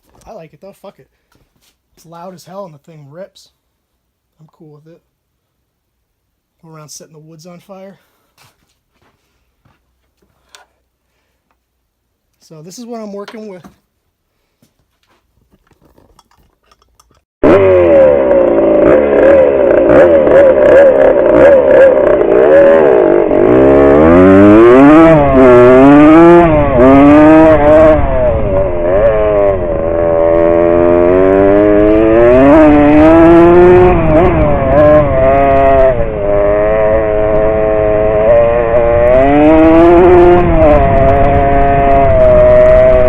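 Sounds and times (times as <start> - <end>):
dirt bike engine revving: 17.4 - 43.0.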